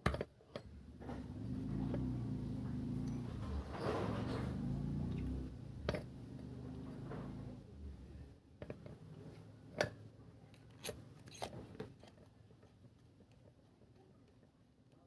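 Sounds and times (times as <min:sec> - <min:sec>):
metal parts and tools clicking: 0:09.8 - 0:12.2.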